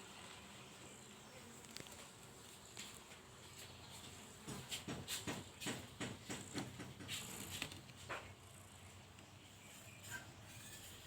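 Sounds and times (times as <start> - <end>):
faint squeak: 9.6 - 11.0.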